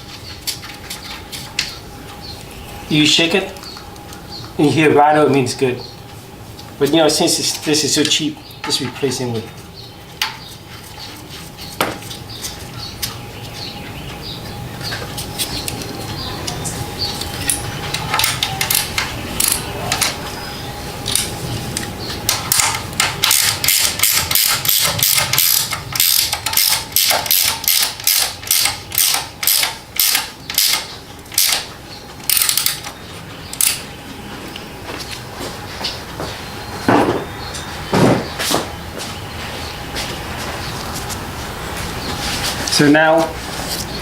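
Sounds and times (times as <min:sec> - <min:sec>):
handling noises: 0:00.0 - 0:44.0
ratchet wrench clicking: 0:22.3 - 0:32.9.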